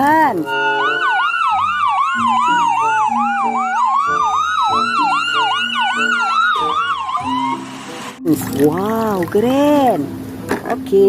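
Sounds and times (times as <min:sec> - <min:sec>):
electronic ambulance siren: 0:00.4 - 0:08.2.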